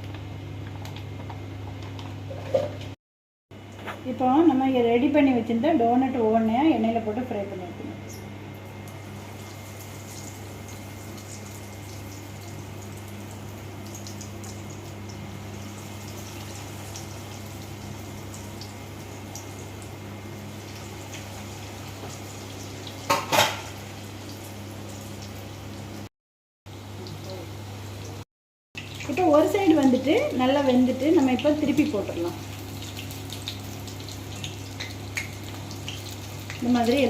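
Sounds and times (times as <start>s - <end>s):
food frying in hot oil: 8.8s - 26.1s, 28.8s - 37.0s.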